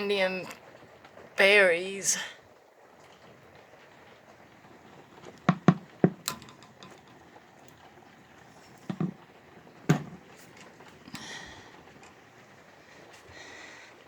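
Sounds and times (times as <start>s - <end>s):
faint steady background noise: 0.0s - 14.0s
sharp knocks and taps: 5.5s - 7.0s, 8.9s - 9.2s, 9.9s - 10.2s.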